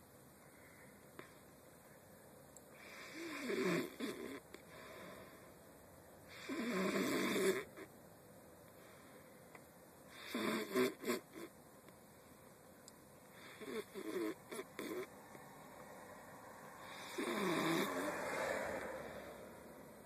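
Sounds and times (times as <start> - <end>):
person snoring: 2.8 - 5.4, 6.3 - 7.8, 10.1 - 11.5, 13.4 - 15.1, 16.8 - 19.7.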